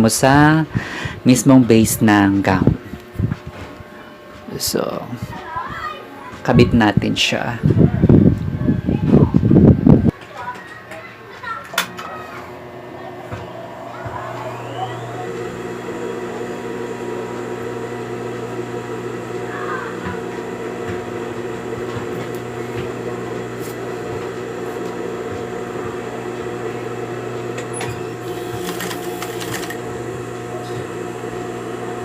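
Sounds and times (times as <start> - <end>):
electric sewing machine running: 11.8 - 32.0
clicks: 20.0 - 25.5.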